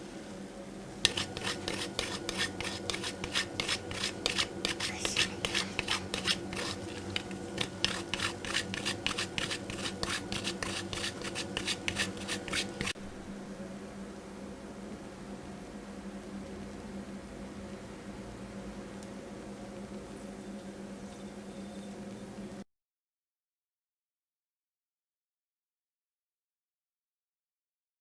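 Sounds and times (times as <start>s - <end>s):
steady low hum: 0.9s - 13.9s
kitchen utensil scraping: 1.0s - 13.0s.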